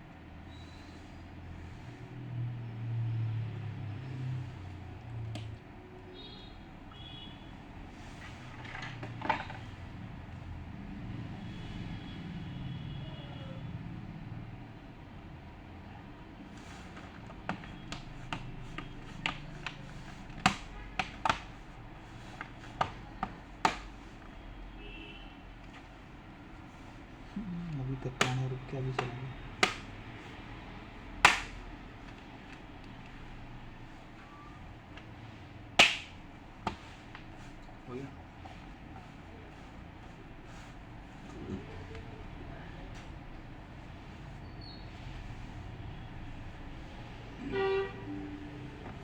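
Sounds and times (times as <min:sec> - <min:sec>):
passing vehicle rumble: 0:01.2 - 0:05.8, 0:09.7 - 0:15.4
sharp clicks and taps: 0:29.0 - 0:29.9.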